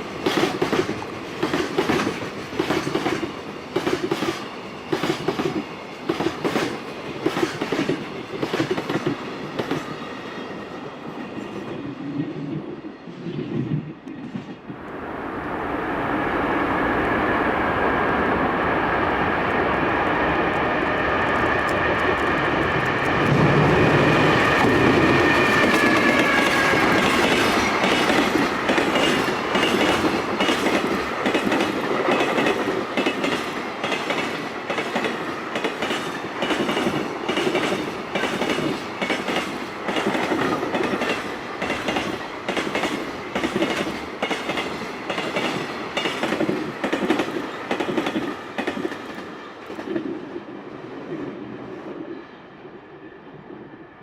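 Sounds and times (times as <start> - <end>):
train wheels clacking on rail joints: 0.0 - 10.0, 21.2 - 50.1.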